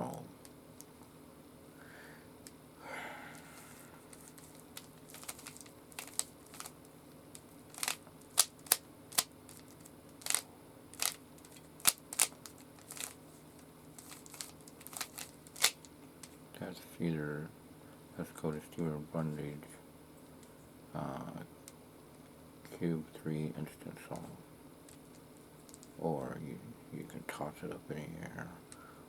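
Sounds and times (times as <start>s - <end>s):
plastic puzzle cube clicking: 5.1s - 6.7s, 7.7s - 10.4s, 11.0s - 13.2s, 14.0s - 15.8s.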